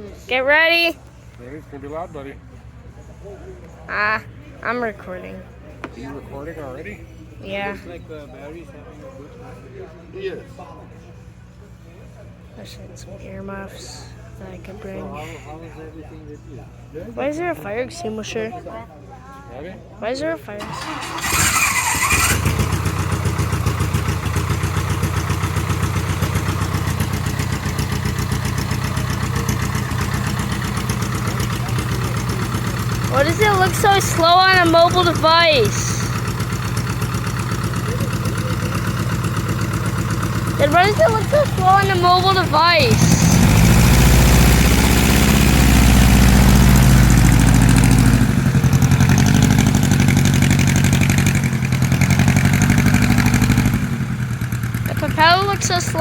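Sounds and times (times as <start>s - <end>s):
airplane piston engine idling: 20.6s - 56.0s.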